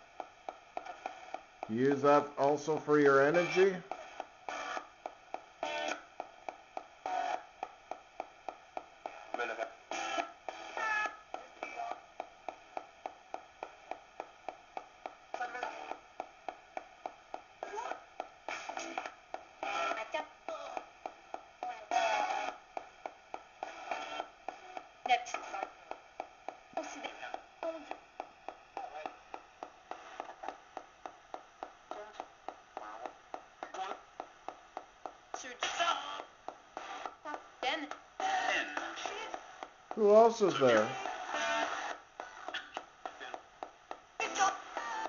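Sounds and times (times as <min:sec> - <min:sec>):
radio clicking over static: 0:00.0 - 0:45.0
snatches of broadcast voice: 0:00.8 - 0:04.9, 0:09.1 - 0:12.0, 0:17.6 - 0:20.8, 0:21.6 - 0:22.6, 0:31.9 - 0:34.1, 0:35.4 - 0:43.5, 0:44.2 - 0:45.0
broadcast voice fragments: 0:01.7 - 0:03.9, 0:40.0 - 0:41.1.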